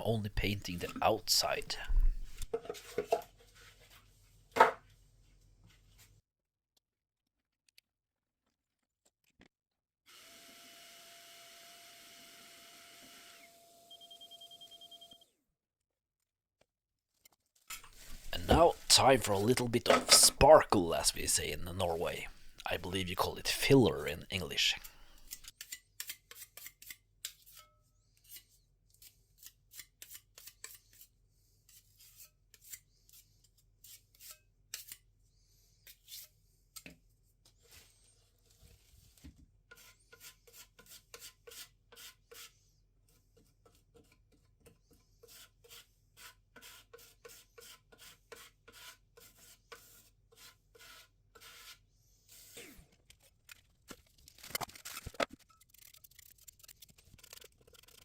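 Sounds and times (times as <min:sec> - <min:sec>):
putty knife scraping wood: 0:17.7 - 0:20.4, 0:45.2 - 0:51.8.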